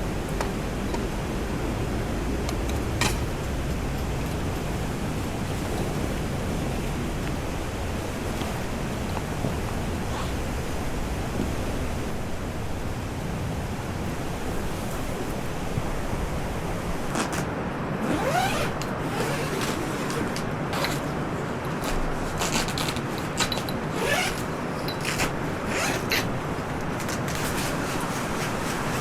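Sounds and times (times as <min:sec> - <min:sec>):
steady rushing noise: 0:00.0 - 0:22.4.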